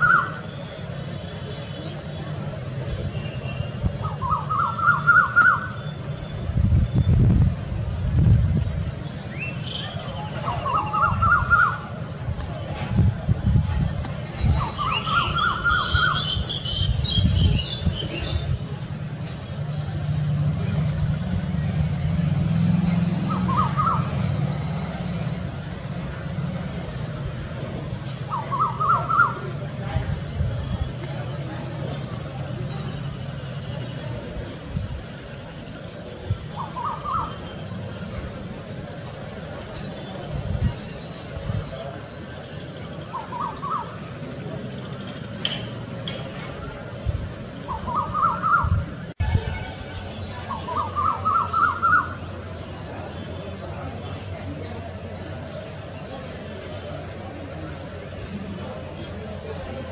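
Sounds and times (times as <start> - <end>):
cuckoo calling: 0.0 - 0.7, 4.0 - 6.0, 9.4 - 12.1, 28.2 - 29.6, 36.5 - 37.7, 47.6 - 48.8, 50.4 - 52.4
low engine rumble: 0.0 - 59.9
small birds chirping: 8.5 - 22.2, 26.2 - 59.9.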